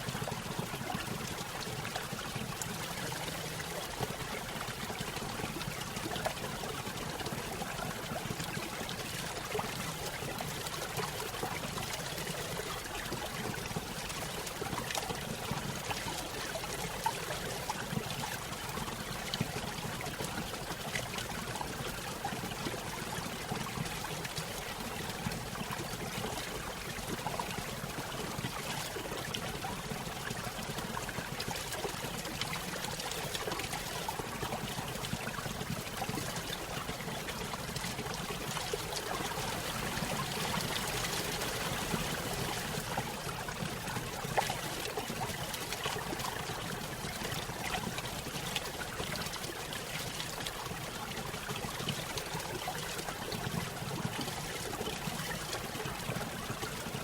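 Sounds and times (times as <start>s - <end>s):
stream splashing over waterfall: 37.8s - 46.6s.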